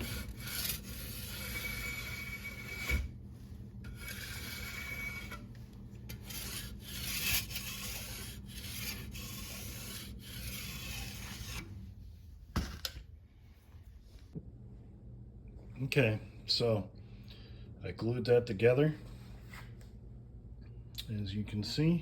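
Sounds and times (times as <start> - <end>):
wood being sanded by hand: 6.2 - 11.6.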